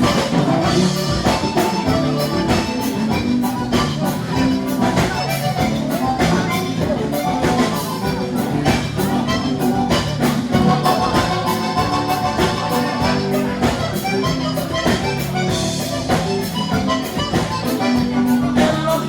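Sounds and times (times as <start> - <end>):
live band playing dance music: 0.0 - 19.0
steady drum beat: 0.0 - 19.0.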